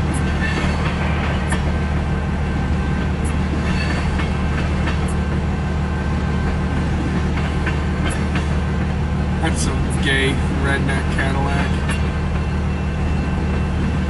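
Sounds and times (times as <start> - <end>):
train wheel clicks: 0.0 - 1.8, 3.0 - 5.4, 6.4 - 8.9, 11.1 - 12.5
train rumbling past: 0.0 - 14.0.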